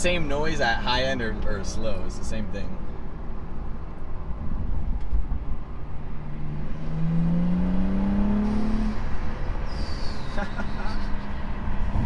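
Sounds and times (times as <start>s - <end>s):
car engine accelerating: 5.0s - 12.0s.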